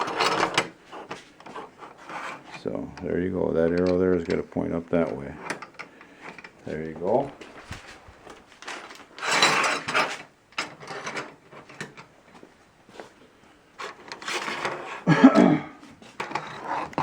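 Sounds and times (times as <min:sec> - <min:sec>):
metal hardware clicking and scraping: 0:02.6 - 0:07.3.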